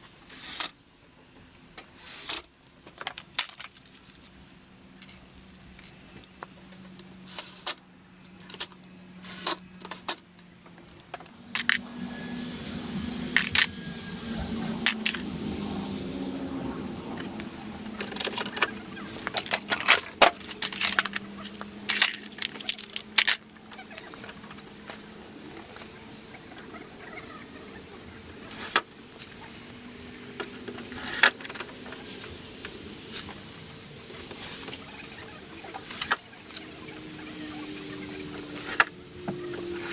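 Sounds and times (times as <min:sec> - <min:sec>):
clicks and metallic clatter: 0:01.8 - 0:12.0, 0:13.2 - 0:13.8, 0:17.1 - 0:26.0.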